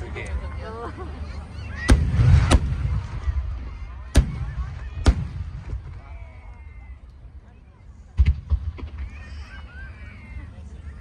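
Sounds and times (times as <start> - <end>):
fireworks bangs: 1.8 - 6.1.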